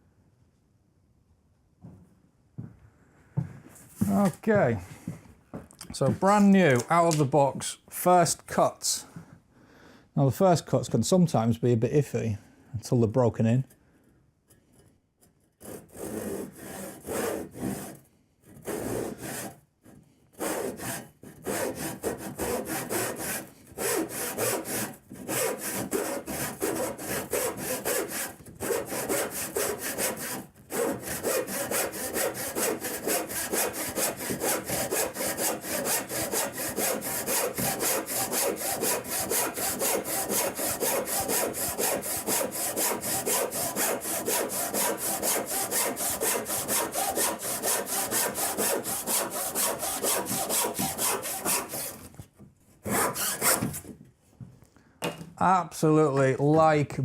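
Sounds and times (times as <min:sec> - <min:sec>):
handsaw cutting wood: 0:15.6 - 0:19.6, 0:20.3 - 0:52.1, 0:52.8 - 0:53.8.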